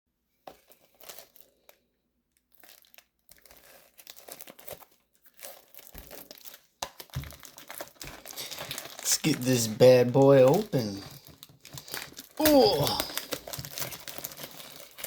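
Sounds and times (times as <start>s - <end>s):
plastic packaging crinkling and tearing: 0.5s - 15.0s.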